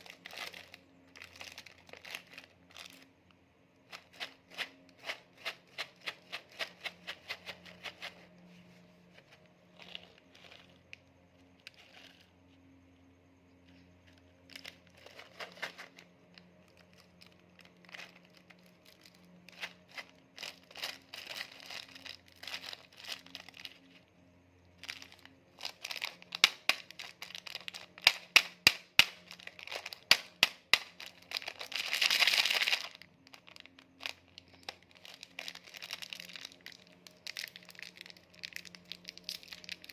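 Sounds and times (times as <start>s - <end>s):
plastic packaging crinkling: 0.0s - 3.1s, 3.8s - 12.3s, 13.7s - 24.0s, 24.7s - 39.9s
wrapper tearing: 0.0s - 3.1s, 14.5s - 23.9s, 24.8s - 39.9s.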